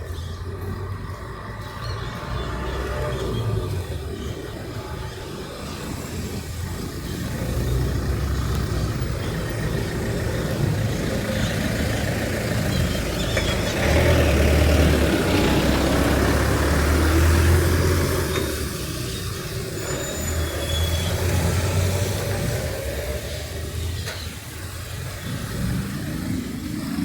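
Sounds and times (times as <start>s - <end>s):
vehicle engine running: 0.0s - 19.8s.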